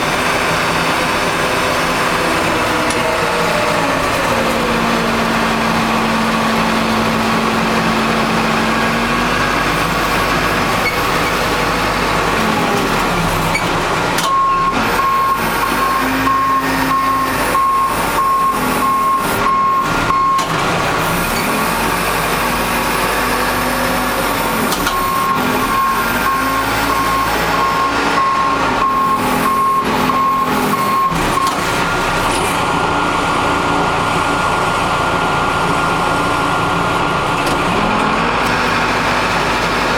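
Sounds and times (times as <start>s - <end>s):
diesel engine revving under load: 0.0s - 39.9s
back-up alarm beeping: 14.3s - 20.5s, 24.9s - 31.6s.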